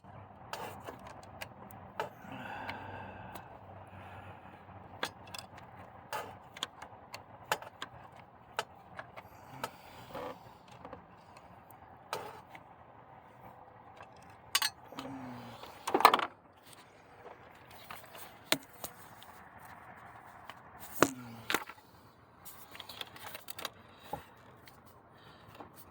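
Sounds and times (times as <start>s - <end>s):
faint steady hum: 0.0s - 25.9s
metal clatter: 14.0s - 14.9s
metal tools clinking: 14.5s - 15.1s.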